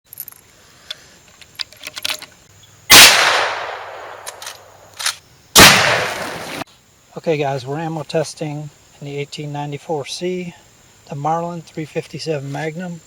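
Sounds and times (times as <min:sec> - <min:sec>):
rifle shots with echo: 0:02.9 - 0:04.6, 0:05.6 - 0:06.5.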